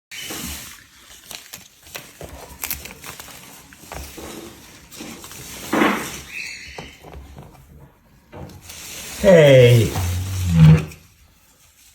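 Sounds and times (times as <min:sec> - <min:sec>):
cockatoo screech: 0:09.2 - 0:11.0.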